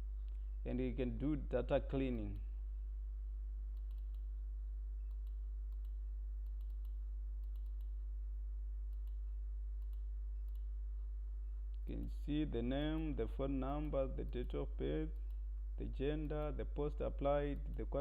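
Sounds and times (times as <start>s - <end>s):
low electrical hum: 0.0s - 18.0s
computer mouse clicks: 3.7s - 4.3s, 5.0s - 8.0s, 8.9s - 9.2s, 9.8s - 10.7s.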